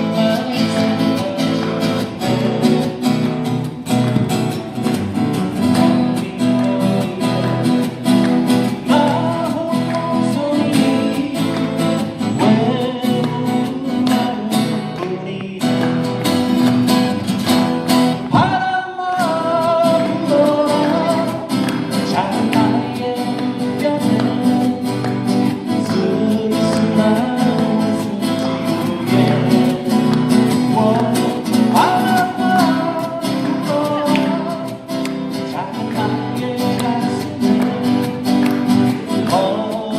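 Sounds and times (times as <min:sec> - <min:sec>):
acoustic guitars strumming: 0:00.0 - 0:39.9
person singing: 0:05.6 - 0:16.2, 0:18.3 - 0:38.2, 0:38.9 - 0:39.9.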